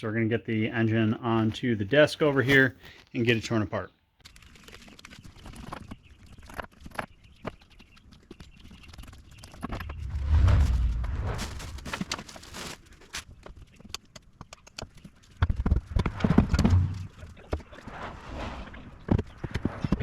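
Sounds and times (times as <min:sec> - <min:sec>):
deep rumble: 0:09.7 - 0:12.5, 0:15.7 - 0:17.2.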